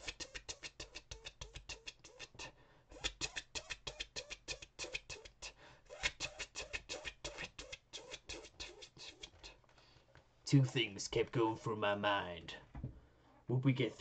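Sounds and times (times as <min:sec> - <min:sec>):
person imitating helicopter rotor: 0:00.0 - 0:09.5.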